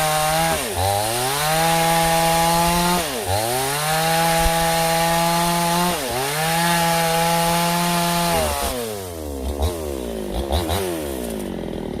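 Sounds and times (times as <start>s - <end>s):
chainsaw engine revving: 0.0s - 12.0s.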